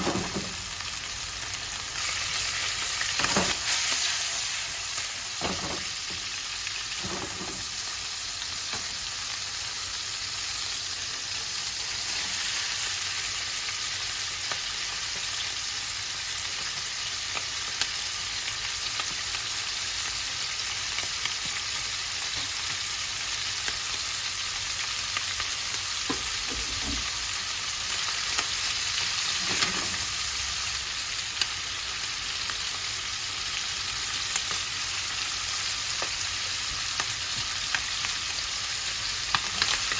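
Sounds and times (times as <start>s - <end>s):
food sizzling in a pan: 0.0s - 39.9s.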